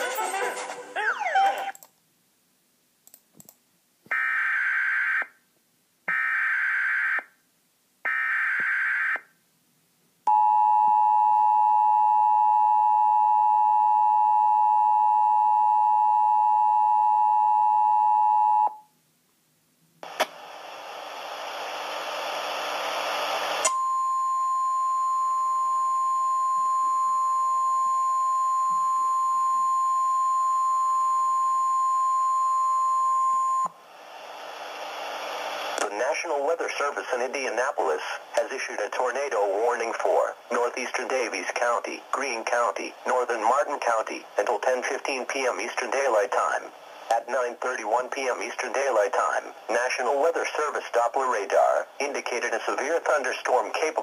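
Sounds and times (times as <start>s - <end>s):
click: 1.7s - 2.0s, 3.0s - 3.6s
static hiss: 20.0s - 23.7s, 33.7s - 39.0s.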